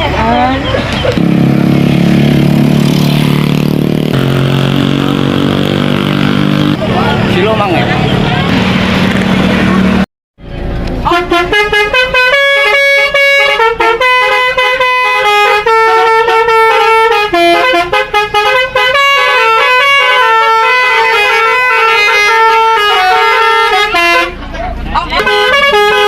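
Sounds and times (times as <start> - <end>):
multi-tone bus horn tune: 11.0 - 24.5, 25.1 - 26.0.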